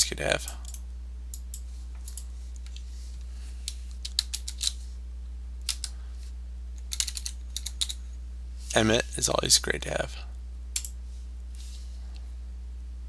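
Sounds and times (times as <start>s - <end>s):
steady low hum: 0.0s - 13.0s
computer keyboard keystrokes: 0.6s - 2.3s, 3.7s - 4.7s, 5.6s - 6.0s, 6.8s - 8.0s, 10.8s - 11.0s.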